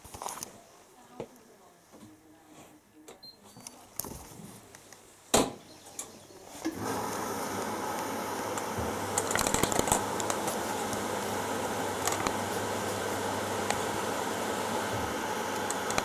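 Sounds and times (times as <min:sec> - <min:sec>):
washing machine low hum: 0:06.6 - 0:16.0
washing machine rushing water: 0:06.7 - 0:16.0.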